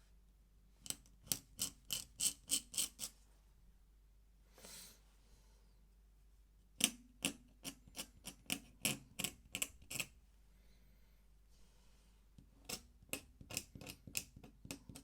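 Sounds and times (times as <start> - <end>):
soft scrape: 11.5 - 12.2
pen nib ticking on paper: 12.7 - 15.0.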